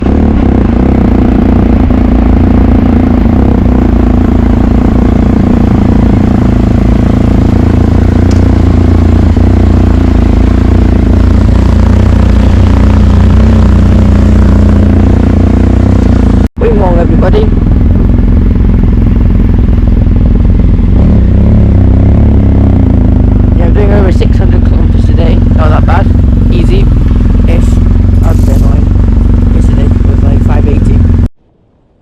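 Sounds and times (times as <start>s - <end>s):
vehicle engine running: 0.0s - 32.0s.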